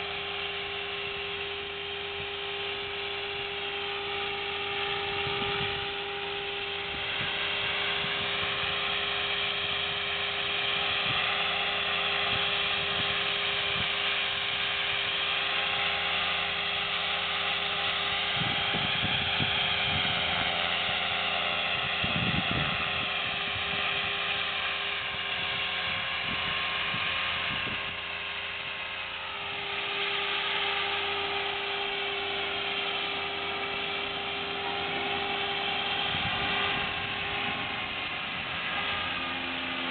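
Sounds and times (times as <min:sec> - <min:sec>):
rc helicopter motor whine: 0:00.0 - 0:39.9
low rumbles: 0:25.0 - 0:39.9.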